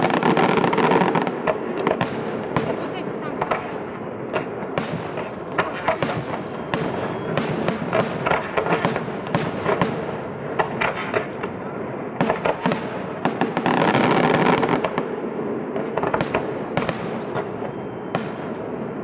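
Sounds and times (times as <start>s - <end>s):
fireworks crackling: 0.0s - 19.0s
fireworks shells bursting: 2.0s - 11.4s.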